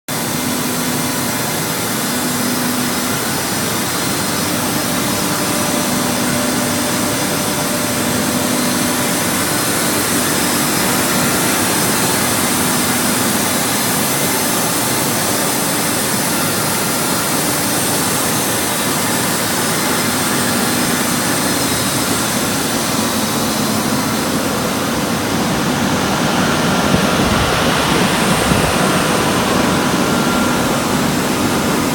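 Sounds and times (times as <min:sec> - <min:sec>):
air compressor running: 0:00.1 - 0:31.9.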